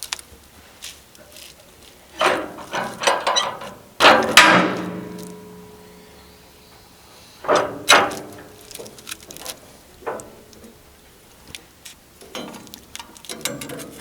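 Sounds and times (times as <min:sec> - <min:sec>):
steel clanking on sawmill: 0:02.1 - 0:06.5, 0:07.3 - 0:11.5, 0:12.1 - 0:14.0
heavy ringing metal strike: 0:02.2 - 0:06.6, 0:07.4 - 0:11.1.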